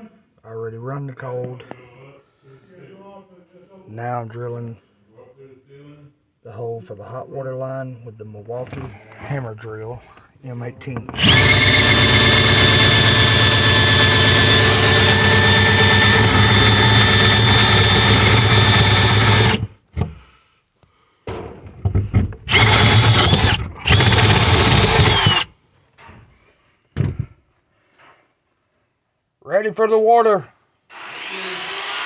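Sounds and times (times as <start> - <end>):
hammer drill boring: 11.2 - 19.7, 22.5 - 25.5, 30.9 - 32.0.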